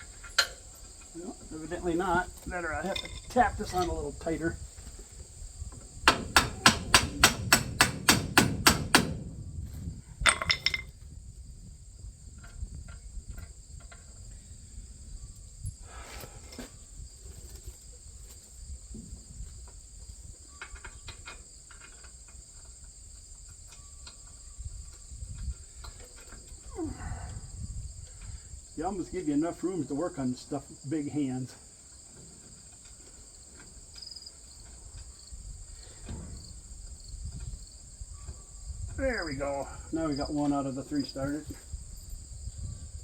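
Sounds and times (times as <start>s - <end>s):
crickets chirring: 0.0s - 43.0s
hammer tapping on metal: 6.1s - 9.2s.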